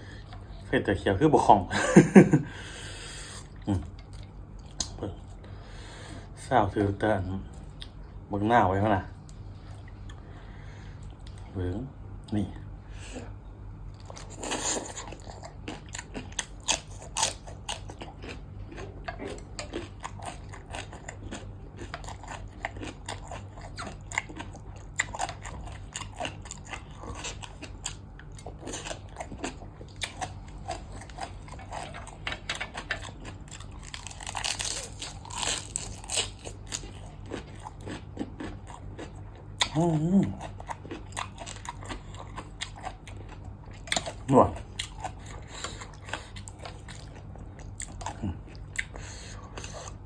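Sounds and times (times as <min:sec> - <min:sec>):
person chewing and crunching: 0:13.9 - 0:50.0.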